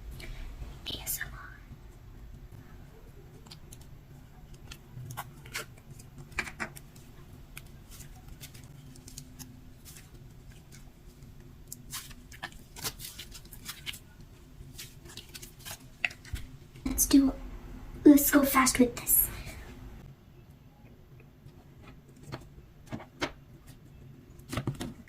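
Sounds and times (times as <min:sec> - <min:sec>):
slime squishing: 0:02.5 - 0:16.6.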